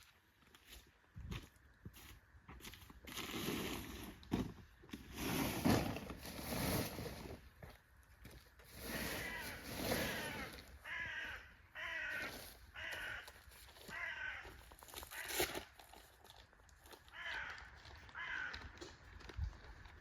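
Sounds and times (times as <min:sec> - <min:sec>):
crow cawing: 0:09.2 - 0:15.5, 0:17.1 - 0:18.8.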